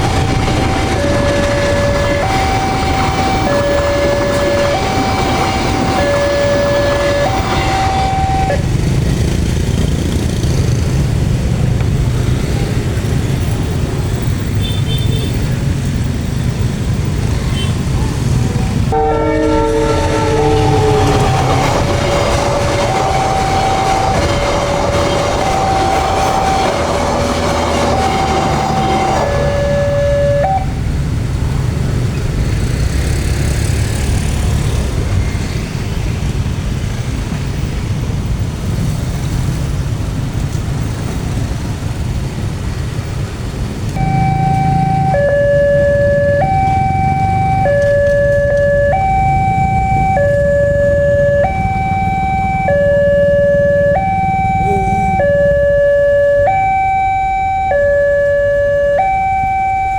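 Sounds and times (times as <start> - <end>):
locomotive horn chord: 0.0 - 8.7, 18.9 - 30.7, 44.0 - 59.3
two-tone level-crossing alarm: 0.0 - 8.7, 18.9 - 30.8, 44.0 - 59.9
train rumbling past: 0.0 - 14.6, 15.4 - 59.9.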